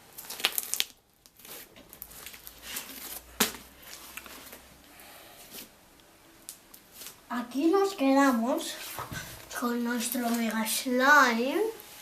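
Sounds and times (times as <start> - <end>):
sticky slime crackling: 0.0 - 4.8.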